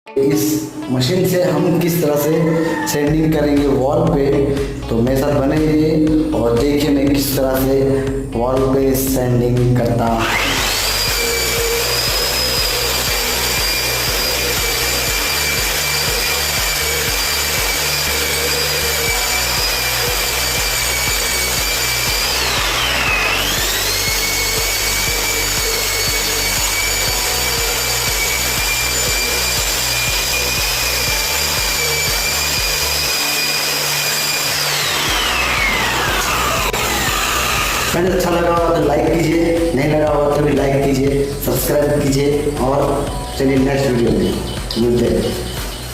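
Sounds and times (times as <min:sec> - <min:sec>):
electric sander whining: 0:09.4 - 0:45.9.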